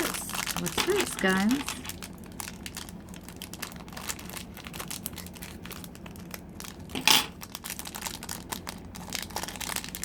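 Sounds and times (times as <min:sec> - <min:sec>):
plastic packaging crinkling: 0:00.0 - 0:10.0.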